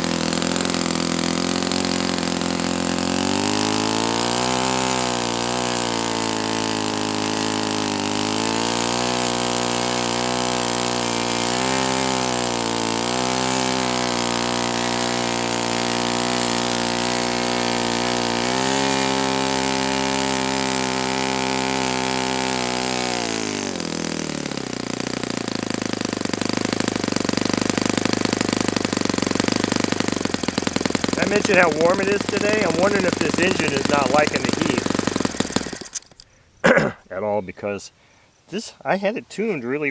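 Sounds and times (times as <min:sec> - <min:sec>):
model glow engine running: 0:00.0 - 0:36.2.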